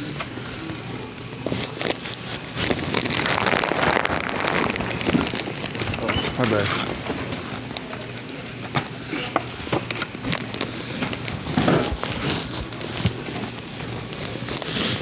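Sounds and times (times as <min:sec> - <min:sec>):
rustling: 0:00.7 - 0:07.7, 0:10.3 - 0:15.0.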